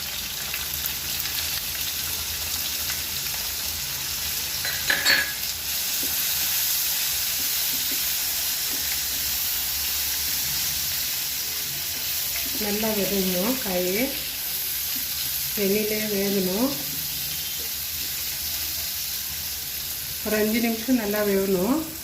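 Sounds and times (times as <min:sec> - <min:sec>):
vegetables sizzling in oil: 0:00.0 - 0:22.0
spoon clattering against pan: 0:04.6 - 0:05.5.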